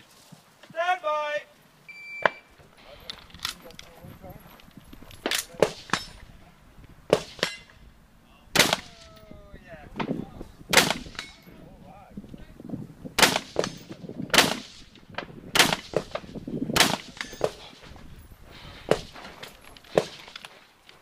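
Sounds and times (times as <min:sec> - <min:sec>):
rifle shots: 0:07.1 - 0:07.6, 0:08.5 - 0:09.1, 0:10.7 - 0:11.4, 0:13.2 - 0:17.7.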